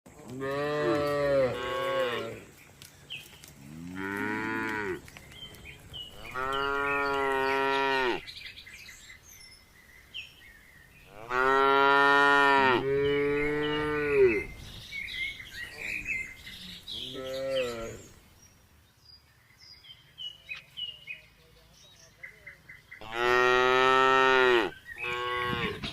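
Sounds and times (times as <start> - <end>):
small birds chirping: 0.3 - 25.9
cow mooing: 0.4 - 2.5, 3.7 - 5.0, 6.2 - 8.2, 11.1 - 14.5, 23.0 - 25.9.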